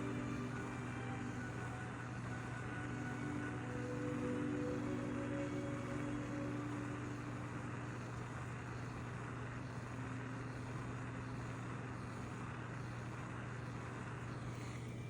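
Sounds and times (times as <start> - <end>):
low hum: 0.0 - 15.0
gas torch hissing: 10.5 - 15.0.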